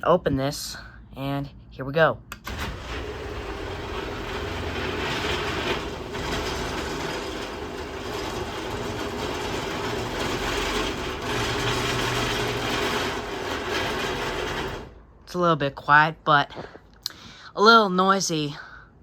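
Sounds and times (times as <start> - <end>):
garage door and rail rattling: 2.4 - 15.1
garage door opener motor hum: 2.4 - 15.1.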